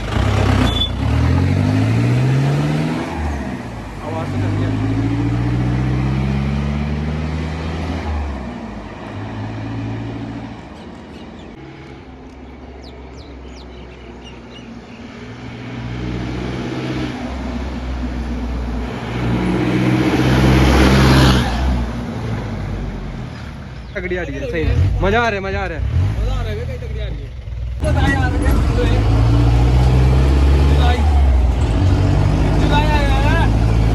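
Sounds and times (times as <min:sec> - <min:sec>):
car engine through loud exhaust: 0:00.0 - 0:11.0, 0:27.3 - 0:33.9.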